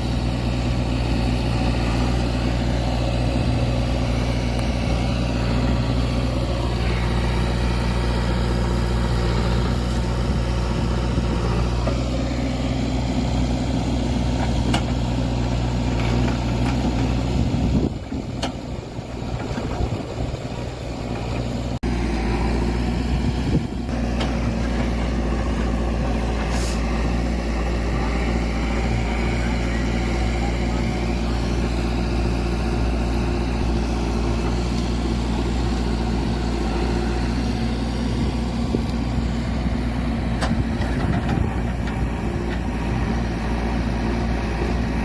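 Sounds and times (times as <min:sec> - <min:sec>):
diesel engine running: 0:00.0 - 0:45.0.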